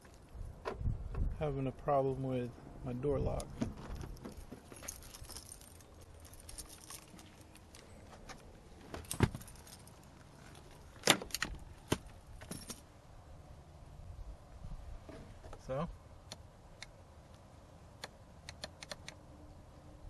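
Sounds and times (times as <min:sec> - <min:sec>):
keys jangling: 0:04.3 - 0:08.0, 0:09.0 - 0:10.7
sharp clicks: 0:18.0 - 0:19.2.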